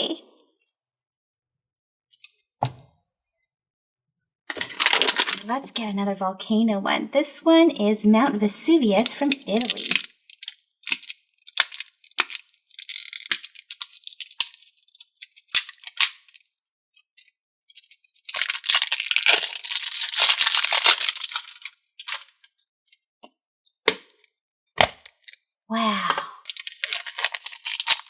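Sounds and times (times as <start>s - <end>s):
crinkling rustle: 4.5s - 5.5s, 9.0s - 16.4s, 17.8s - 22.3s, 26.5s - 28.0s
slime toy clicks and crackles: 9.0s - 16.4s, 17.8s - 22.2s, 26.5s - 28.0s.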